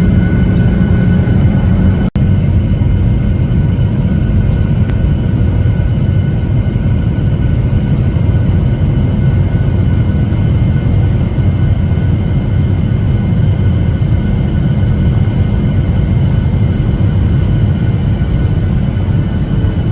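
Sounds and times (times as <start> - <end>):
faint whining tones: 0.0 - 2.2
airliner cabin engine rumble: 0.0 - 19.9.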